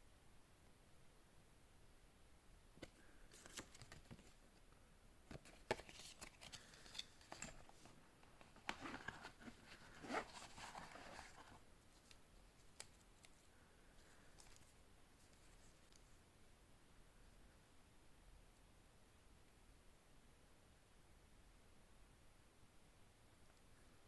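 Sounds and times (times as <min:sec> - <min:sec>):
packaging rustling and crinkling: 0:05.4 - 0:11.6.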